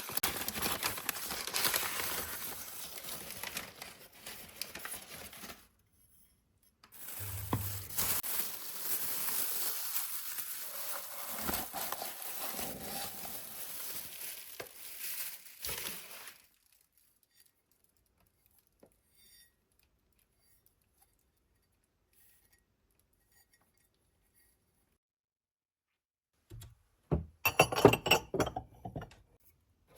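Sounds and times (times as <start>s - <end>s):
crinkling and rustling handling: 0.0s - 5.8s, 6.8s - 19.0s.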